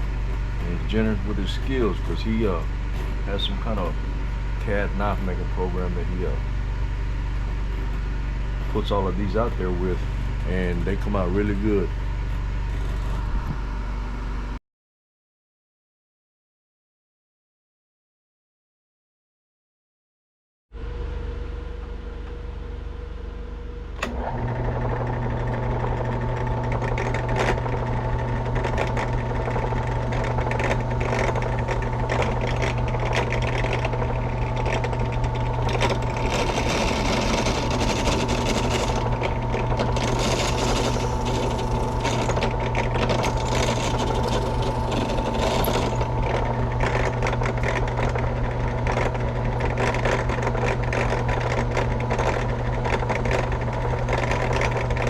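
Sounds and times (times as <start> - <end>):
abrasive grinding on workpiece: 0.0 - 6.4, 26.8 - 48.0
electric sander running: 0.0 - 13.7, 24.0 - 49.8.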